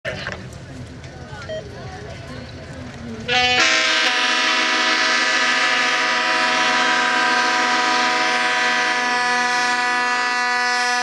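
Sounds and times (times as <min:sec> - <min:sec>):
locomotive air horns blasting: 0:03.3 - 0:11.0.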